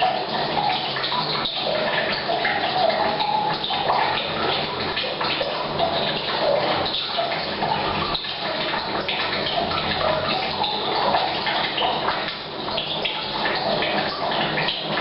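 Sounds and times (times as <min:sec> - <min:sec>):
water pouring into a tank: 0:00.0 - 0:15.0.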